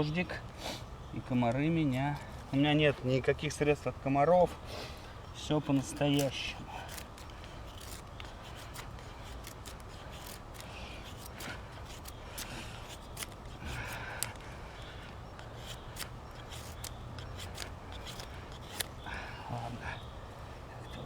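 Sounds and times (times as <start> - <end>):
knife shaving wood: 4.5 - 21.0.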